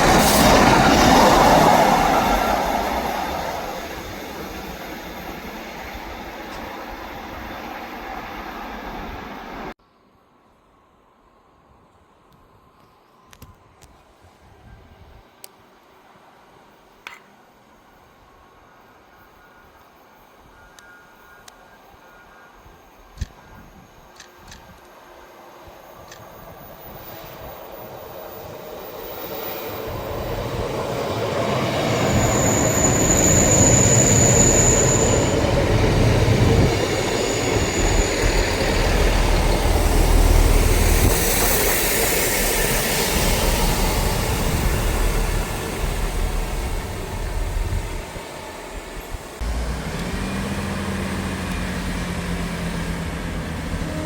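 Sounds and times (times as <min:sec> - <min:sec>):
train wheel squeal: 0:00.0 - 0:09.7, 0:25.7 - 0:49.4
diesel train passing: 0:00.0 - 0:09.8, 0:24.9 - 0:54.0.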